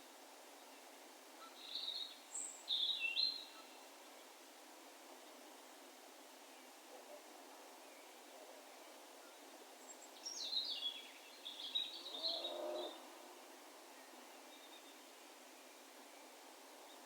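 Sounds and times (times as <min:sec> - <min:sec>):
faint background hiss: 0:00.0 - 0:17.0
distant songbird singing: 0:10.3 - 0:13.1.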